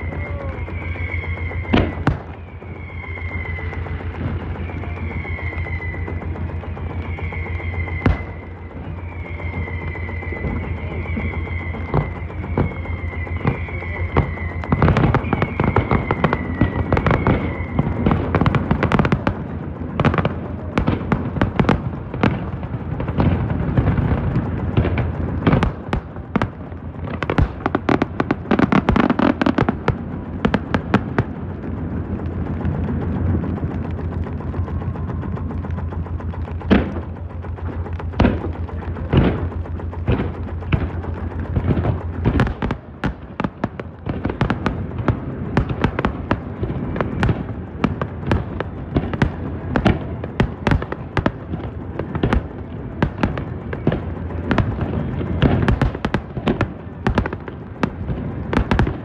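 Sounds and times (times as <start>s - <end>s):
fireworks bangs and crackles: 0.0s - 59.0s
steady low hum: 0.0s - 59.0s.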